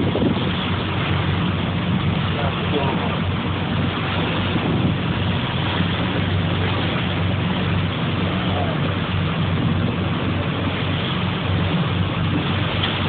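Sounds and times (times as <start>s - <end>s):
boat engine droning: 0.0s - 13.0s
wind and water hiss: 0.0s - 13.0s.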